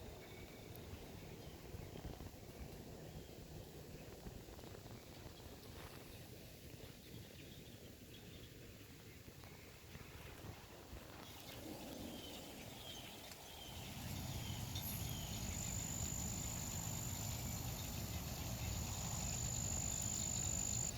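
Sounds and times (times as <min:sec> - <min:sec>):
insect chirping and buzzing: 0:13.2 - 0:20.9.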